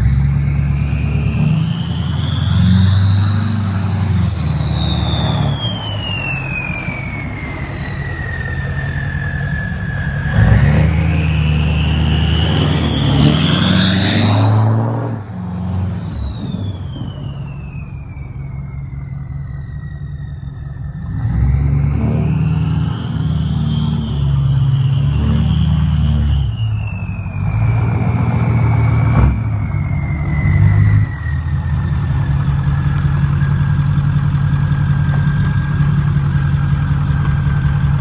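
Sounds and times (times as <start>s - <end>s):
diesel engine low rumble: 0.0s - 38.0s
turbo whistle: 0.1s - 34.3s.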